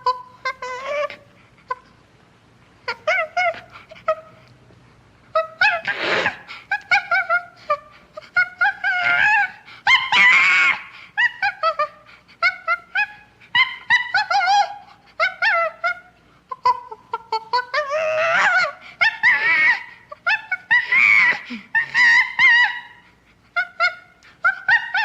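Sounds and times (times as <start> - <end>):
chimpanzee scream: 5.4 - 7.8, 8.4 - 25.0.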